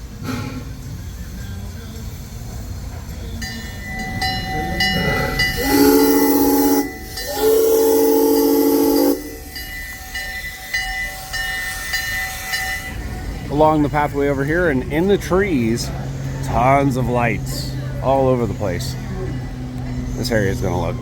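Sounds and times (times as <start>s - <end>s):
train whistle blowing: 4.0s - 13.0s.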